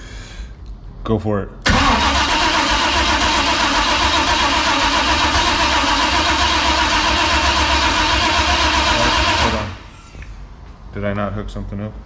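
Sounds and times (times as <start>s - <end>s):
engine cranking on starter: 1.7s - 10.3s.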